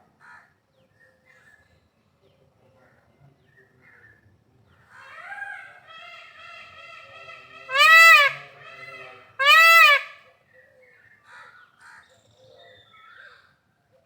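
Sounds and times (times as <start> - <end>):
peacock calling: 7.3 - 10.2.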